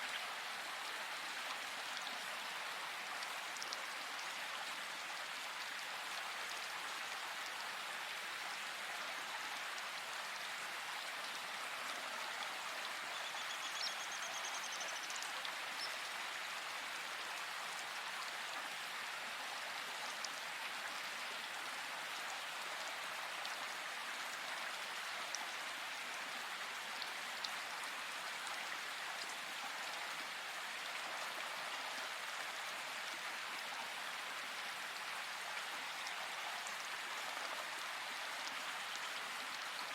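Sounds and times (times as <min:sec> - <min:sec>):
faint drip-like clicks: 0:03.1 - 0:07.6, 0:11.0 - 0:16.8.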